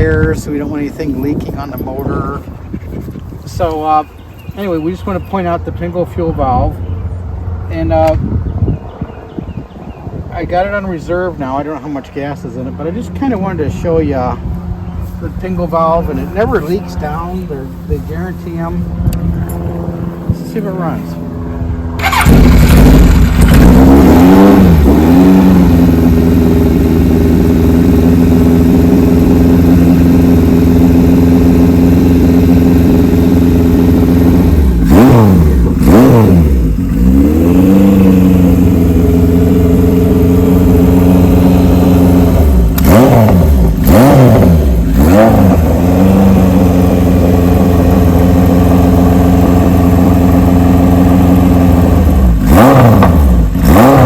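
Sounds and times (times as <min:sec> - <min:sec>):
motorcycle throttle blips: 0:14.4 - 0:54.0
motorcycle engine idling: 0:25.5 - 0:52.5.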